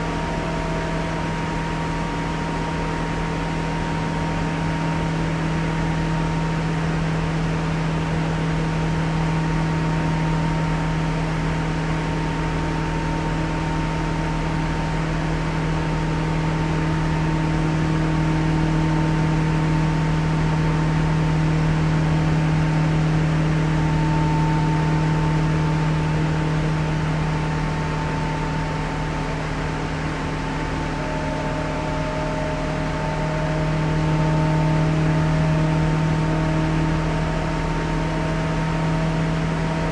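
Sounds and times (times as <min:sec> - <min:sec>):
electric train rumble: 0:00.0 - 0:39.9
lower motor whine: 0:00.0 - 0:39.9
high motor whine: 0:15.5 - 0:39.9.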